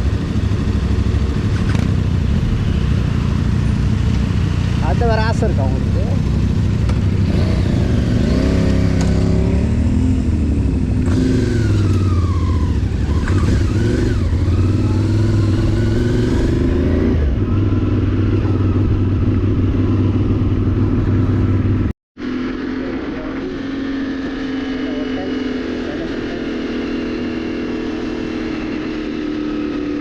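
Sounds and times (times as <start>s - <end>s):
motorcycle engine running: 0.0s - 30.0s
wind and road noise: 0.0s - 30.0s.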